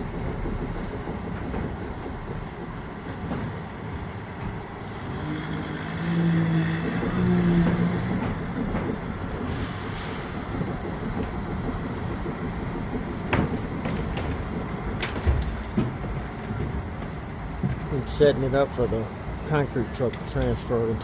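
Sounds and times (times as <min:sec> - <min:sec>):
pitched drone: 0:04.8 - 0:11.2.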